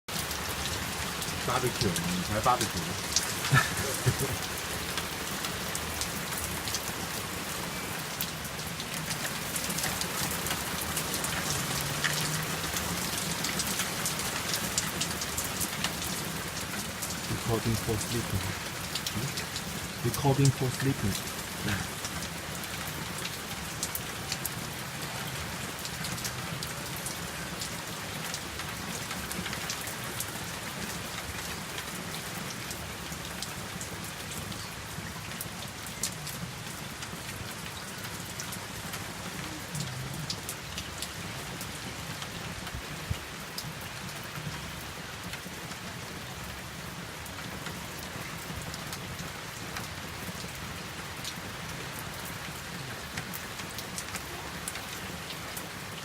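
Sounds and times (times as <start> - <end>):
raindrops ticking: 0.1 - 25.1
steady rain hiss: 0.1 - 56.0.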